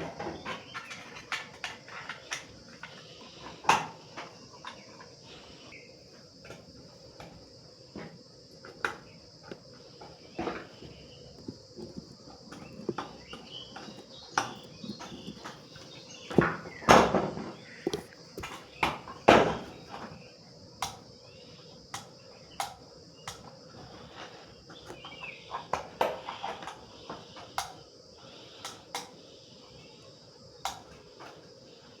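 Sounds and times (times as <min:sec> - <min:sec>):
steady high-pitched hiss: 0:00.0 - 0:32.0
small hard objects knocking: 0:08.7 - 0:20.0.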